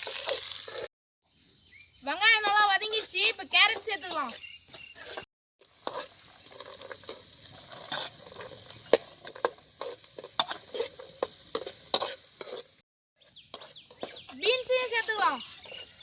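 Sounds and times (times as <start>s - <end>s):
metal spatula scraping a pan: 0.0s - 0.9s, 2.3s - 16.0s
vegetables sizzling in oil: 0.0s - 0.9s, 2.0s - 16.0s
crickets chirping: 0.0s - 16.0s.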